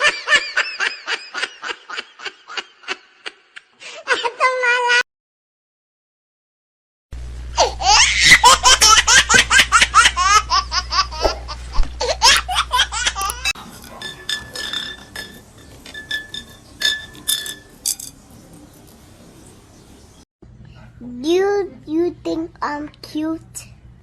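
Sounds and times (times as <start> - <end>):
short clinks and ticks: 13.2 - 18.2.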